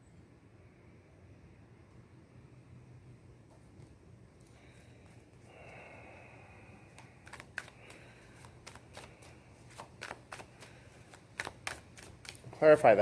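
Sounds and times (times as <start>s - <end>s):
cards sliding swish: 7.0s - 12.5s.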